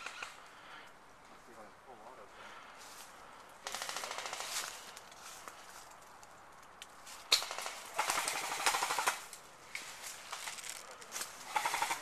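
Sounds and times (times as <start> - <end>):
airsoft rifle firing: 3.6 - 4.5, 7.3 - 9.2.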